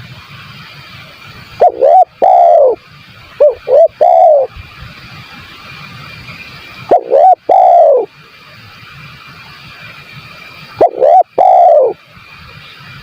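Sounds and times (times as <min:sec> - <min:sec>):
dove cooing: 0:01.6 - 0:02.8, 0:03.4 - 0:04.5, 0:06.9 - 0:08.1, 0:10.8 - 0:12.0.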